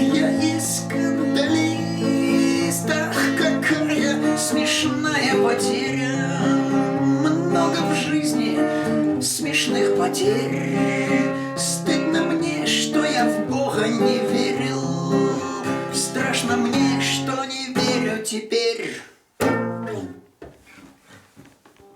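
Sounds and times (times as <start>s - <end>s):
acoustic guitar strumming: 0.0s - 18.3s, 19.4s - 20.4s.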